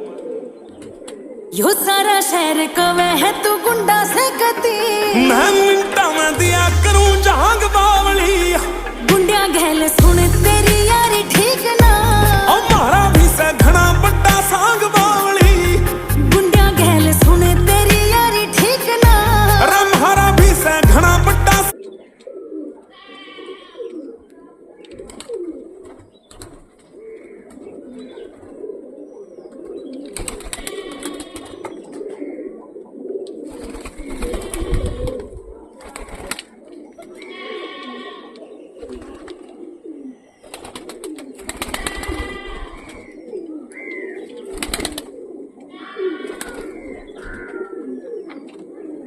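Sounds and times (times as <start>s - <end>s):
pigeons cooing: 0.0s - 1.7s, 21.7s - 49.0s
higher bird calls: 41.6s - 44.6s.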